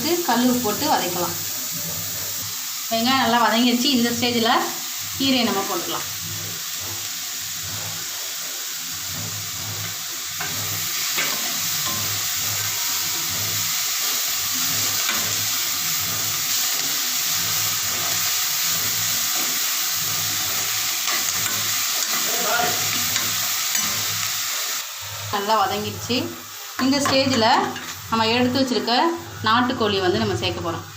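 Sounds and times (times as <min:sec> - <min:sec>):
vegetables sizzling in oil: 0:00.0 - 0:30.9
spatula scraping pan: 0:00.2 - 0:30.4.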